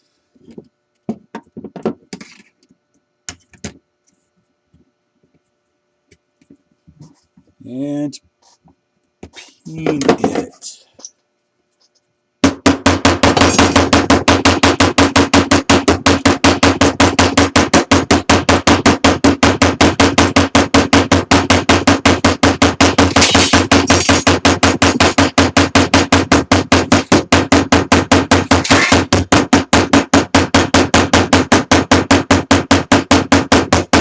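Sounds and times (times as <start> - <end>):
hammer blows on rivet: 28.4 - 29.3.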